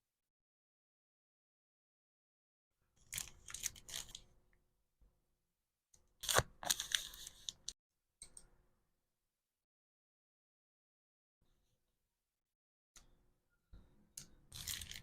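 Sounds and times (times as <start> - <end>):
packaging being torn: 6.2 - 7.6, 14.5 - 15.0.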